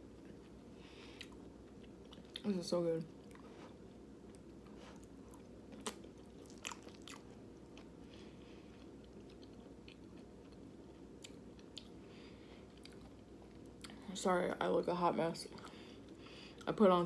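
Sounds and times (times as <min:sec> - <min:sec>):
close-up chewing: 0:00.2 - 0:02.5, 0:03.2 - 0:12.0, 0:12.6 - 0:14.0.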